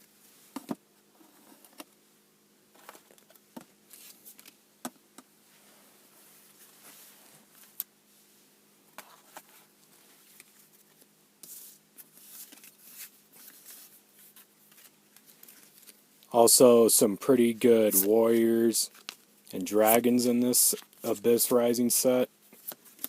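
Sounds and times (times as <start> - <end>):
trading cards rustling and clicking: 9.0 - 16.0, 17.6 - 23.0.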